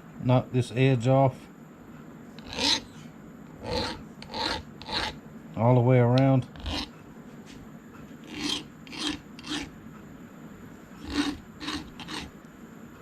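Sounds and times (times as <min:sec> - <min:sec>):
hand file rasping on metal: 0:02.4 - 0:02.9, 0:03.6 - 0:05.2, 0:06.6 - 0:06.9, 0:08.2 - 0:09.7, 0:11.0 - 0:12.3.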